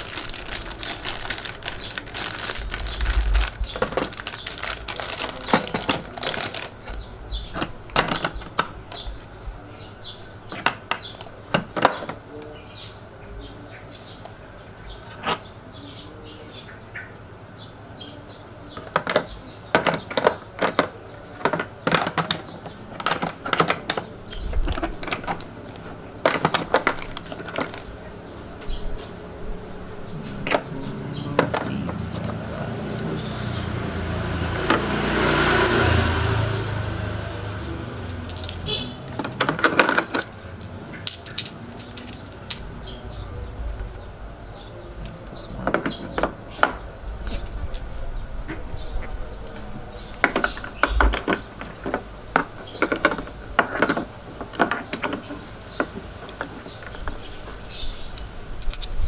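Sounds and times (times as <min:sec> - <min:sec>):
metal objects clinking: 0:10.5 - 0:12.2, 0:18.9 - 0:28.0, 0:30.4 - 0:32.4, 0:38.0 - 0:40.4, 0:41.0 - 0:42.6, 0:58.6 - 0:59.0.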